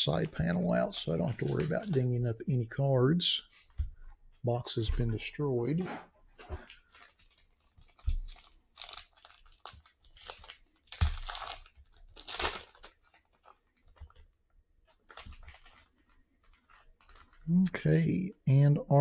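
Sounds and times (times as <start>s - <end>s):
cardboard and paper tearing and rustling: 6.7s - 13.7s.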